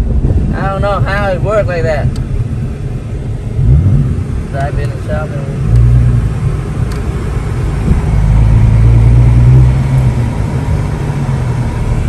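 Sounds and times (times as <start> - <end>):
car engine running at low speed: 0.0 - 12.0.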